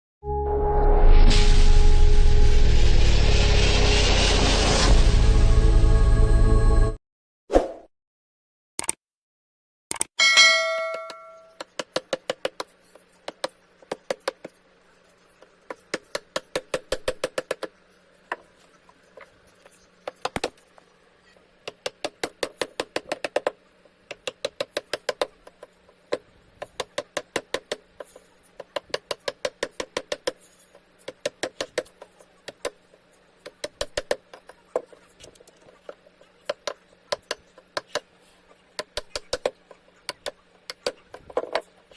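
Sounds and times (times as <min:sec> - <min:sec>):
bell-like ding: 0:10.2 - 0:11.5.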